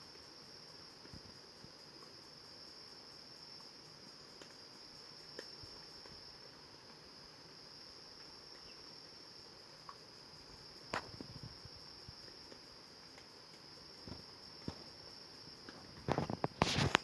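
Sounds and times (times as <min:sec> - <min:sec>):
insect trill: 0:00.0 - 0:17.0
faint ticks: 0:04.2 - 0:07.0, 0:09.8 - 0:17.0.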